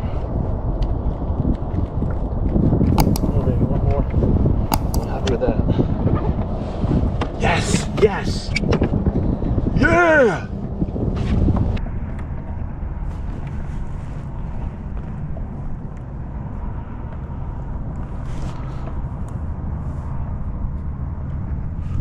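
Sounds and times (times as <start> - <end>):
wind buffeting microphone: 0.0 - 22.0
faint light clicks: 3.0 - 3.4, 4.7 - 5.3.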